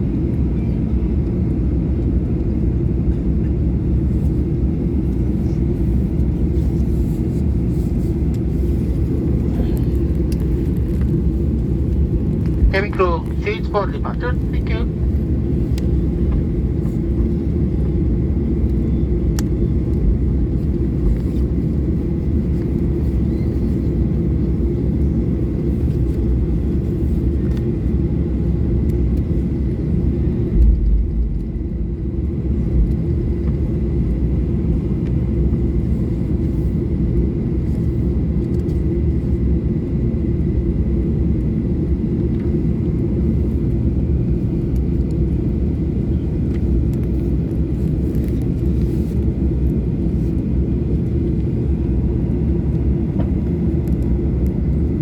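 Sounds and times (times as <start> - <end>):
aircraft cabin engine rumble: 0.0 - 55.0
faint steady whine: 8.6 - 27.7.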